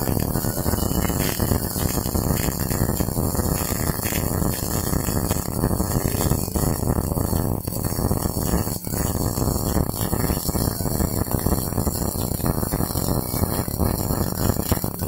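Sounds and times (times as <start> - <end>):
welding arc crackling: 0.0 - 15.0.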